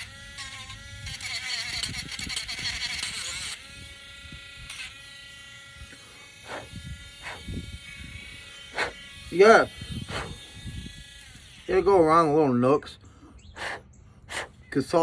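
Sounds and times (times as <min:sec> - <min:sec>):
electric sander humming: 0:00.0 - 0:12.0
electric sander on wood: 0:00.0 - 0:12.6.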